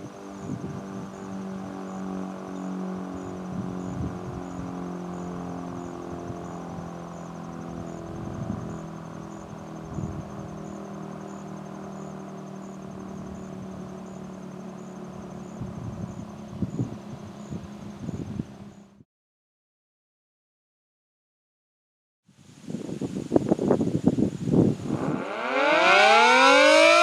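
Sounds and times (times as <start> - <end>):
insects chirping: 0.0 - 19.0.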